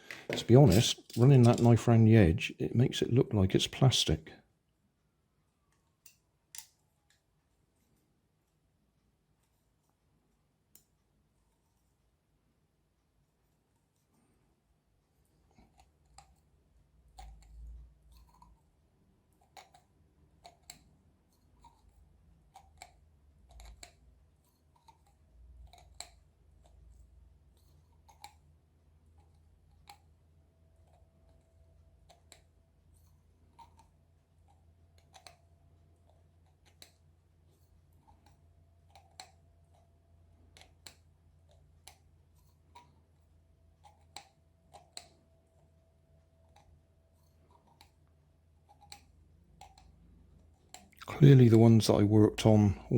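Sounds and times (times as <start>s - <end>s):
low steady hum: 0.0s - 19.5s.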